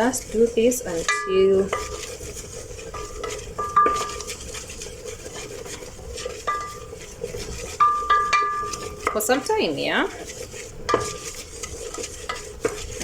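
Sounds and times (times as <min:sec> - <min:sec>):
utensil clinking against pan: 0:00.0 - 0:02.2, 0:02.8 - 0:13.0
utensil scraping a pan: 0:00.0 - 0:13.0.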